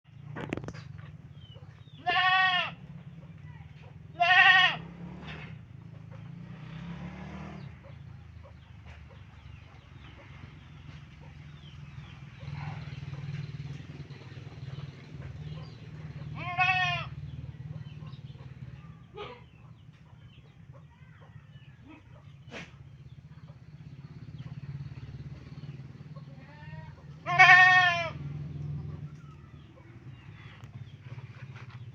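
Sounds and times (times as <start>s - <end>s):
goat bleating: 2.0s - 2.8s, 4.1s - 4.8s, 16.3s - 17.1s, 26.3s - 28.2s.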